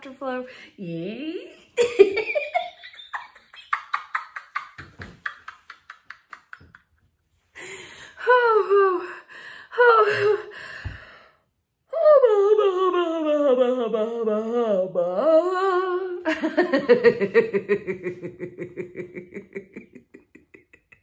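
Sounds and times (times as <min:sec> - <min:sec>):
person laughing: 0:16.3 - 0:21.0.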